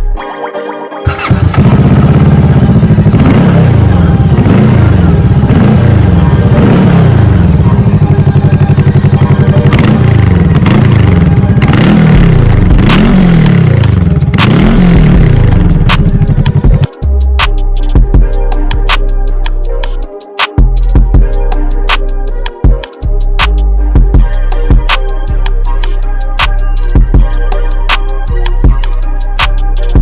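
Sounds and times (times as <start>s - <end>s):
motorcycle engine revving: 1.1s - 17.0s.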